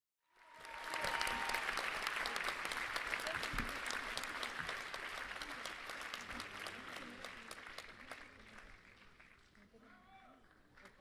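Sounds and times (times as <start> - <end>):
audience applauding: 0.3 - 11.0.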